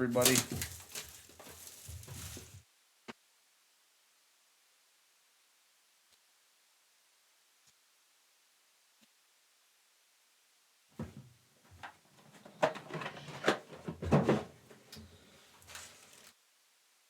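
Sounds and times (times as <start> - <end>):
packaging crinkling and rustling: 0.0 - 2.6, 12.3 - 16.3.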